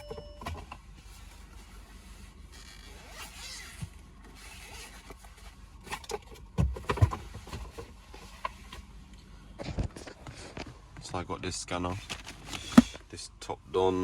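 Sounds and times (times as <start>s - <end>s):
knocks and clatters of handling: 12.0s - 13.0s.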